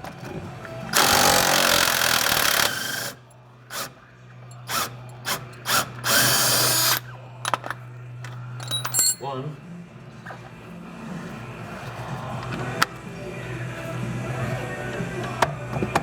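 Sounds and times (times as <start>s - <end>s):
power tool running on bolt: 0.9s - 3.9s, 4.6s - 7.0s.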